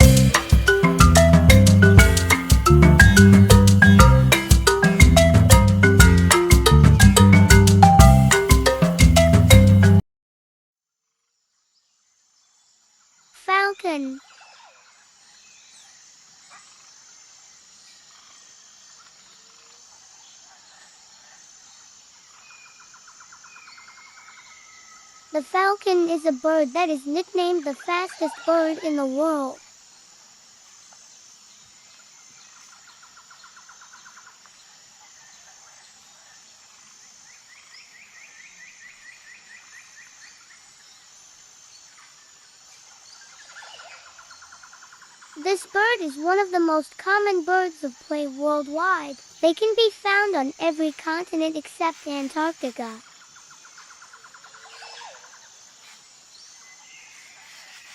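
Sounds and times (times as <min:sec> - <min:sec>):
falcon chattering call: 0:00.0 - 0:06.8
high insect drone: 0:00.0 - 0:09.9, 0:11.8 - 0:57.9
steady high hiss: 0:00.0 - 0:10.0, 0:15.0 - 0:57.9
faint bird calls: 0:51.9 - 0:56.0.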